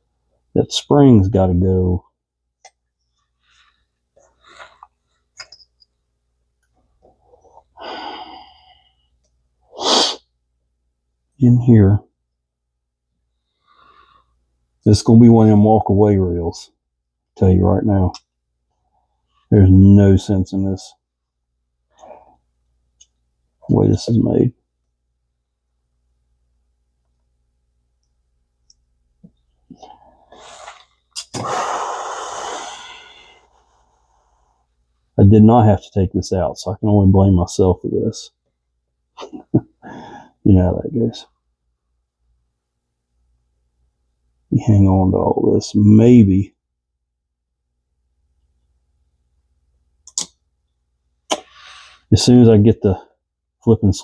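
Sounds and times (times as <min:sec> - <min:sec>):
person sighing: 0:07.8 - 0:08.7, 0:29.8 - 0:33.4, 0:39.4 - 0:40.3
man breathing hard through nose: 0:07.8 - 0:09.1, 0:31.4 - 0:34.4, 0:51.5 - 0:52.1
sharp click: 0:50.0 - 0:50.4.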